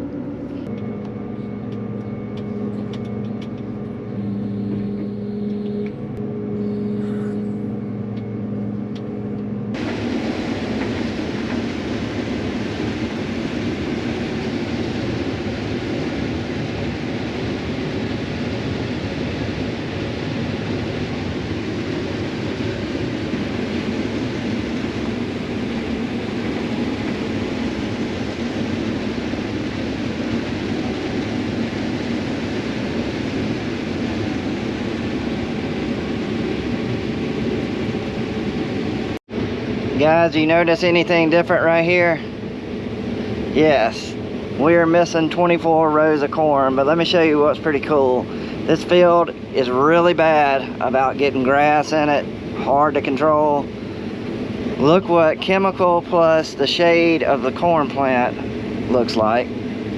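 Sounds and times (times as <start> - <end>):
farm vehicle engine running: 0.0 - 16.1
rushing rumble of travel noise: 0.0 - 59.9.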